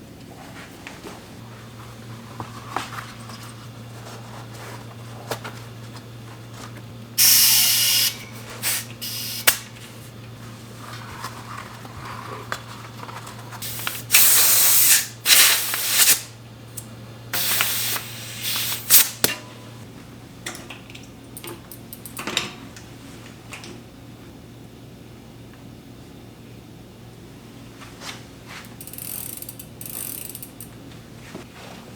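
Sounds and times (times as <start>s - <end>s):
hissing spray bursts: 7.2s - 9.6s, 13.6s - 16.3s, 17.4s - 19.2s.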